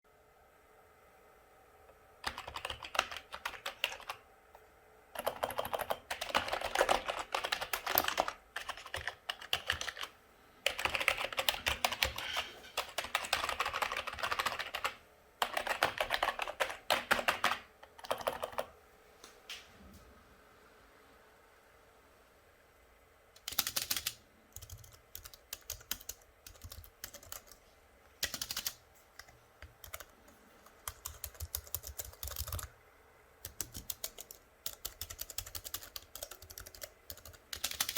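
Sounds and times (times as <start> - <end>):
typing on keyboard: 2.2 - 4.2, 5.2 - 18.7, 23.4 - 27.6, 28.2 - 32.7, 33.4 - 37.9.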